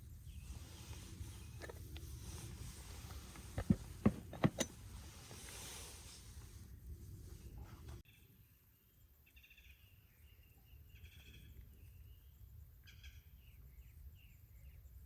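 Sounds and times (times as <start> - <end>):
low steady background rumble: 0.0 - 8.0
birds chirping and trilling: 9.2 - 15.0.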